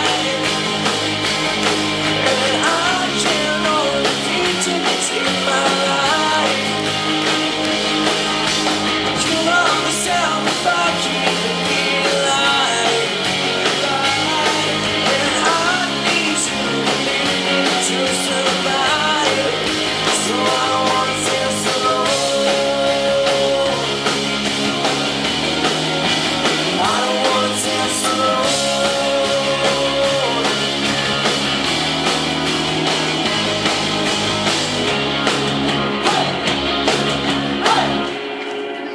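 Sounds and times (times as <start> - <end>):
person singing: 0.0 - 0.9, 2.2 - 6.8, 9.2 - 24.1, 26.7 - 30.7
rock band playing: 0.0 - 38.9.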